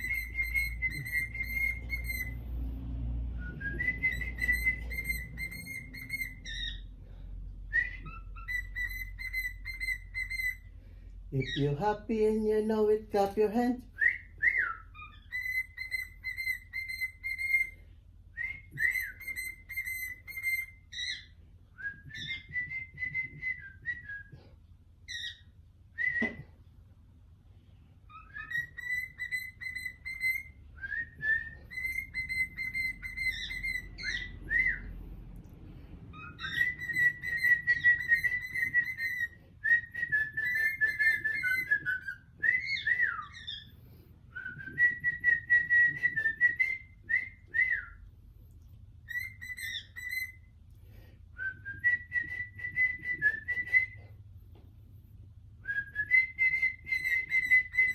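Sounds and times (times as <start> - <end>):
cockatiel whistling: 0.0 - 2.4, 3.4 - 6.9, 7.7 - 10.7, 14.0 - 17.8, 18.4 - 24.4, 25.0 - 26.4, 28.1 - 35.0, 36.1 - 48.0, 49.0 - 50.6, 51.4 - 54.1, 55.6 - 57.9.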